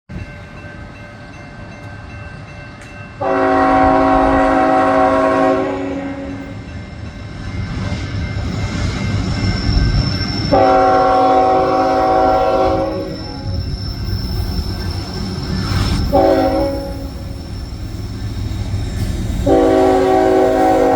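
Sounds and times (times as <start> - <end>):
train rumbling: 0.1 - 20.9
locomotive air horn blasts: 3.2 - 6.5, 10.5 - 13.2, 16.1 - 17.3, 19.4 - 20.9.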